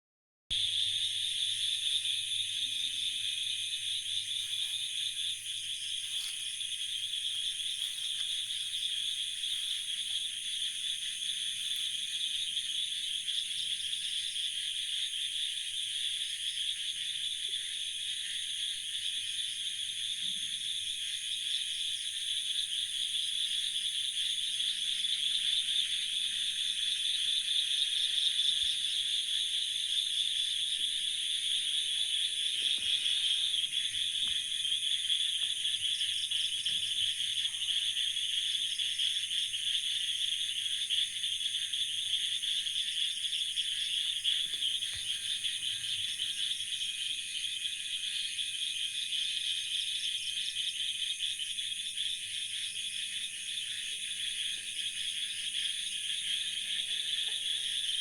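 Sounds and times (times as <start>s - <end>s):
insects and frogs shrilling: 3.8s - 13.9s.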